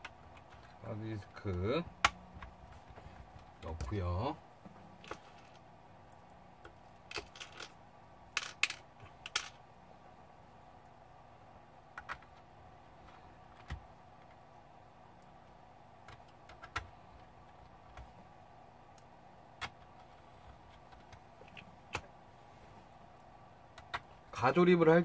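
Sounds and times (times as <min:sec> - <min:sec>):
laptop parts clicking: 0:05.0 - 0:09.6, 0:11.9 - 0:14.4, 0:16.0 - 0:18.2, 0:19.6 - 0:22.1, 0:23.7 - 0:24.3.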